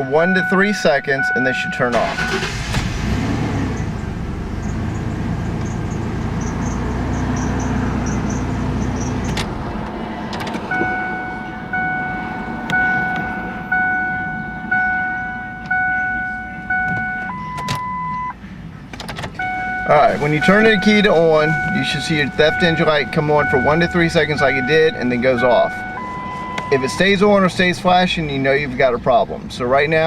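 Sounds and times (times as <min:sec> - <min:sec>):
car warning chime dinging: 0:00.0 - 0:03.0, 0:10.7 - 0:18.4, 0:19.3 - 0:27.6.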